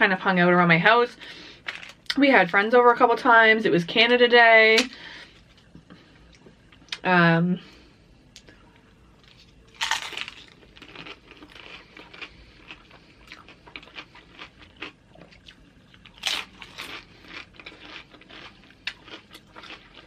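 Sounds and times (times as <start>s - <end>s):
tortilla chips crunching: 9.2s - 20.0s.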